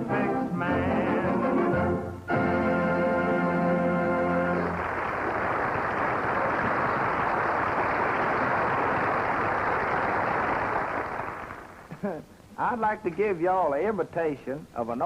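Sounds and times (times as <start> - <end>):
audience applauding: 4.4 - 12.0.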